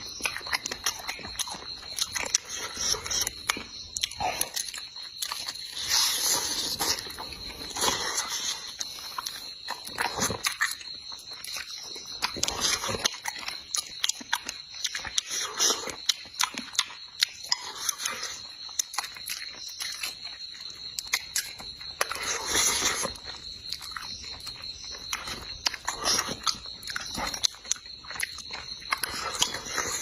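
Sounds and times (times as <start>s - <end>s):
person chewing and smacking food: 0.0s - 30.0s.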